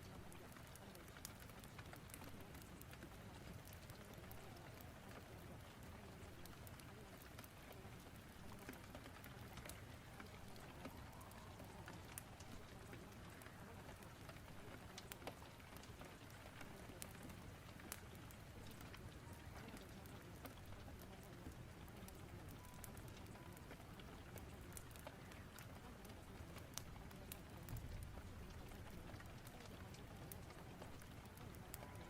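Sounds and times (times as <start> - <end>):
fire crackling: 0.0 - 32.0.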